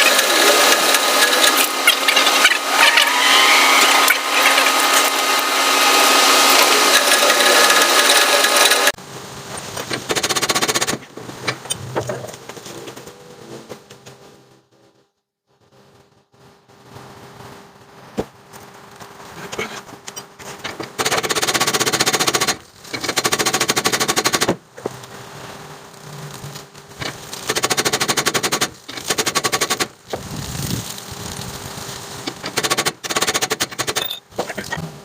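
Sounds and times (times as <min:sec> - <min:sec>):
pneumatic tool hammering: 0:00.0 - 0:09.0, 0:09.8 - 0:11.1, 0:20.7 - 0:24.6, 0:27.4 - 0:30.2, 0:32.2 - 0:34.8.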